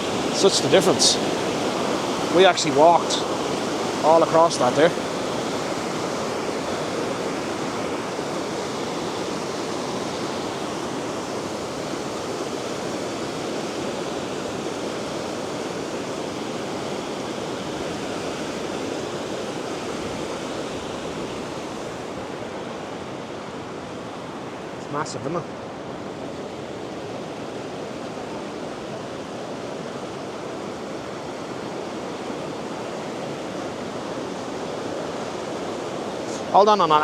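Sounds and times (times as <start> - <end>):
river rapids rushing over rocks: 0.0 - 37.0.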